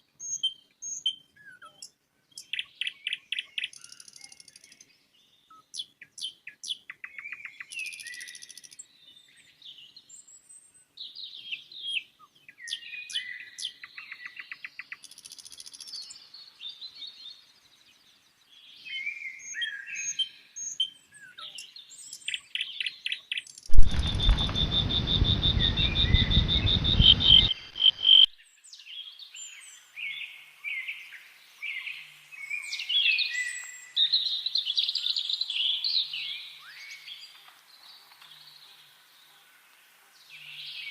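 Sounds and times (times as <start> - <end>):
songbirds chirping and singing: 0.0 - 40.9
loud low rumbling noise: 23.7 - 28.3.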